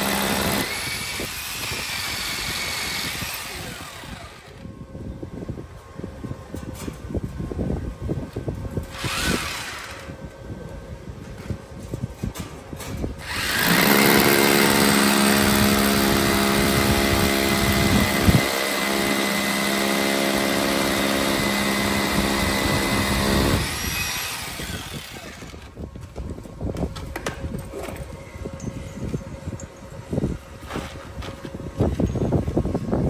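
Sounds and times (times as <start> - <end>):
power tool humming and hissing: 13.2 - 25.7.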